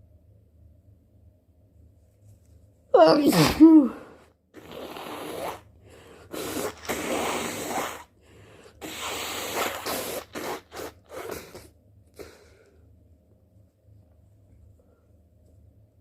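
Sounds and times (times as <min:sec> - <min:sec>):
person blowing congested nose: 0:04.6 - 0:12.5.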